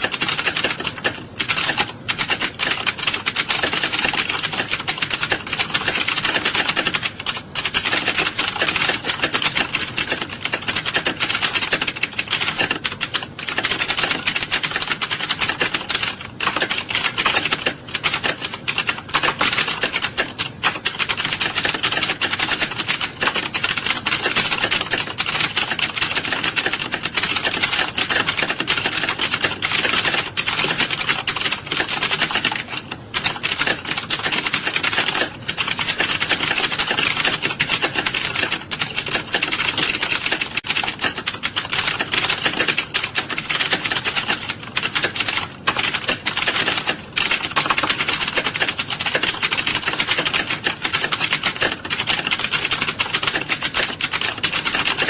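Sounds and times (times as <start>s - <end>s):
many keyboards typing: 0.0s - 55.0s.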